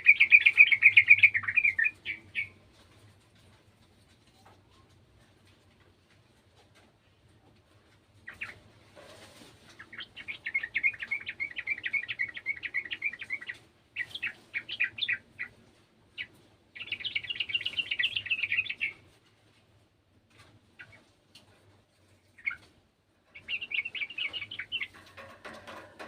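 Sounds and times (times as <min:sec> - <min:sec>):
bird chattering song: 0:00.0 - 0:02.6, 0:08.2 - 0:08.7, 0:09.7 - 0:15.6, 0:16.2 - 0:19.1, 0:20.8 - 0:21.1, 0:22.3 - 0:22.7, 0:23.3 - 0:25.4
rustle: 0:00.0 - 0:26.0.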